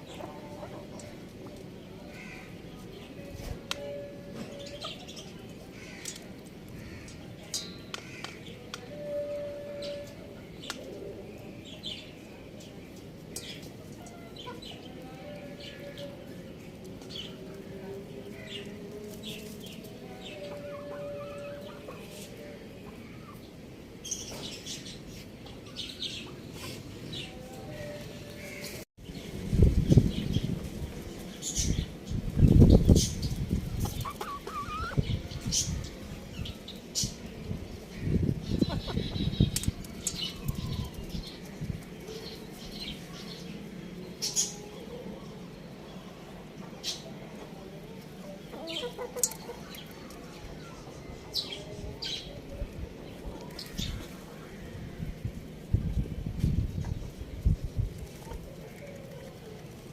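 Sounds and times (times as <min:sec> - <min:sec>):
chickens clucking: 0:00.0 - 0:01.8, 0:20.4 - 0:23.4, 0:32.4 - 0:36.4, 0:38.2 - 0:41.5, 0:46.5 - 0:52.4, 0:57.9 - 0:59.9.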